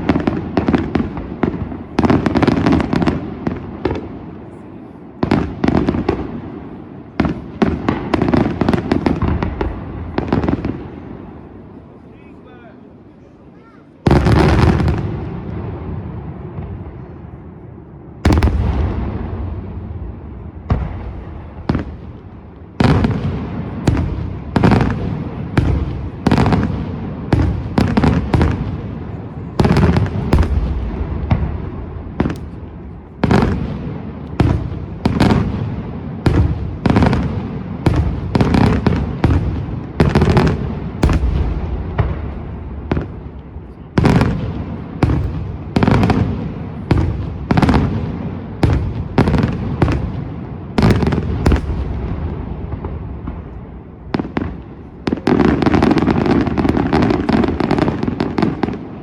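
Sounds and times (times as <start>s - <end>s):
firework shells bursting with echo: 18.2s - 54.9s.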